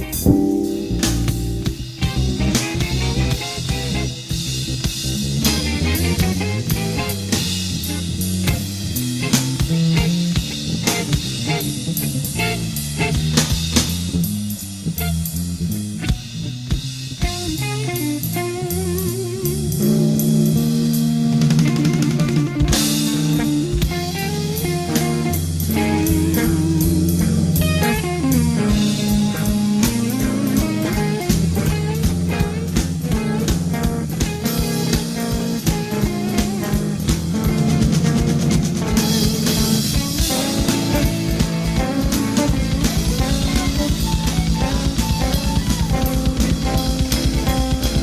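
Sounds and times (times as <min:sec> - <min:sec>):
cymbal crashes: 0:00.0 - 0:04.6
drum kit groove: 0:00.0 - 0:48.0
electric bass melodic lines: 0:00.0 - 0:48.0.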